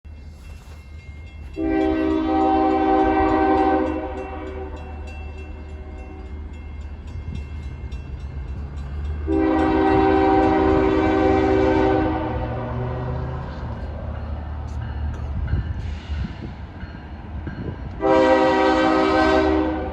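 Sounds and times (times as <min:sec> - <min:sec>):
low rumble of passing train: 0:00.1 - 0:19.9
locomotive air horn blasts: 0:01.5 - 0:06.3, 0:09.2 - 0:12.9, 0:18.0 - 0:19.9.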